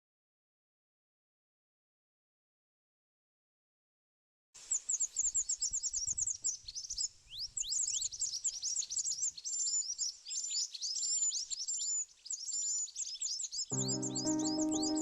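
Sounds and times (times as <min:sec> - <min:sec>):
small bird chirping rapidly: 0:04.7 - 0:15.0.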